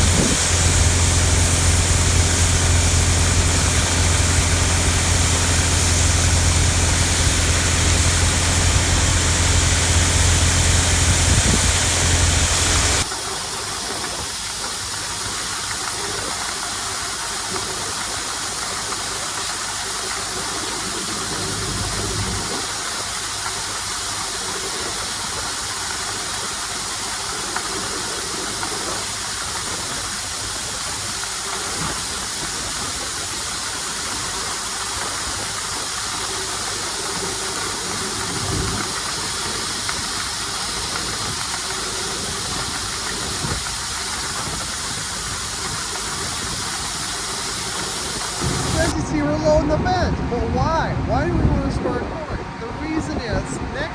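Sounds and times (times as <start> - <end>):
heavy engine humming: 0.0 - 13.1, 47.1 - 53.9
steady rushing hiss: 0.0 - 13.4, 30.4 - 50.0.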